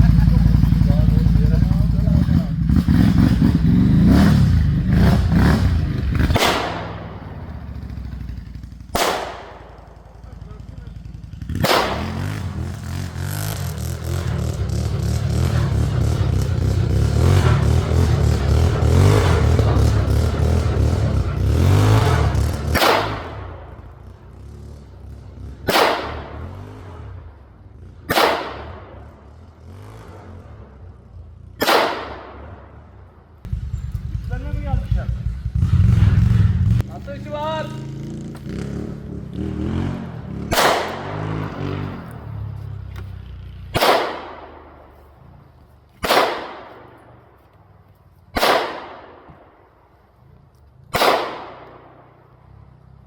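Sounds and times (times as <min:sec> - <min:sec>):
sharp bangs: 0:00.0 - 0:24.2, 0:25.6 - 0:27.4, 0:28.0 - 0:30.6, 0:31.6 - 0:42.5, 0:43.7 - 0:45.4, 0:46.0 - 0:47.3, 0:48.3 - 0:49.8, 0:50.9 - 0:52.2
atv engine running: 0:00.0 - 0:28.1, 0:32.6 - 0:46.0
low steady rumble: 0:00.0 - 0:29.6, 0:30.3 - 0:39.4.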